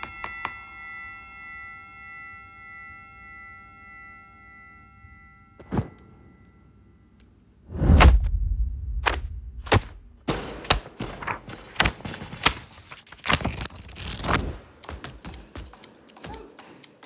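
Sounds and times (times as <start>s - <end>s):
sharp whoosh: 7.7s - 10.3s.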